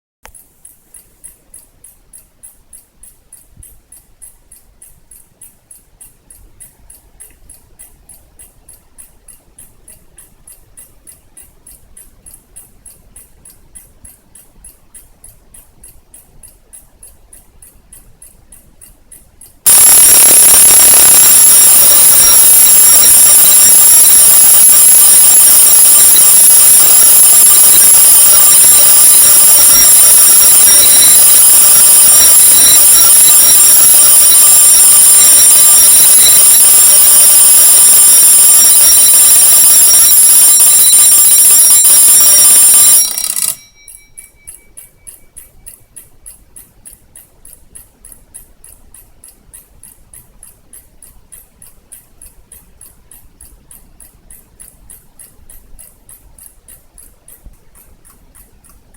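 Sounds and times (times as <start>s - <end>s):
alarm clock bell ringing: 19.7s - 45.6s
clock ticking: 37.6s - 58.9s.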